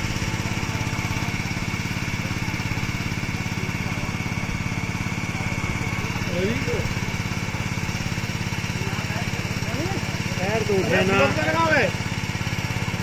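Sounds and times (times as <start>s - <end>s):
small engine running: 0.0s - 13.0s.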